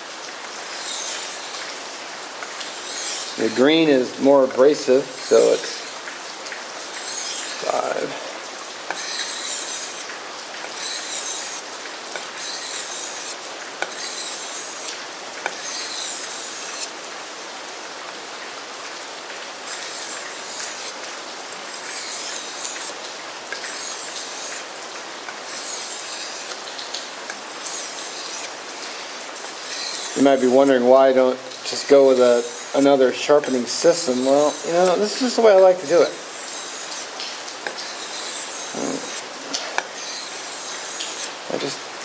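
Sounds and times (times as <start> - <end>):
knife scraping on sharpening stone: 0.7 - 1.7, 2.6 - 3.8, 4.7 - 6.0, 6.9 - 8.1, 8.9 - 16.9, 19.7 - 21.0, 21.7 - 23.0, 23.6 - 24.7, 25.3 - 26.6, 27.3 - 30.8, 31.6 - 41.3.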